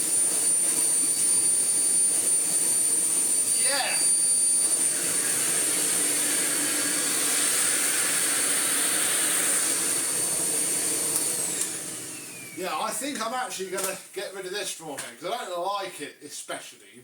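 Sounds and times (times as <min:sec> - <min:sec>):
vacuum cleaner running: 0:00.0 - 0:12.9.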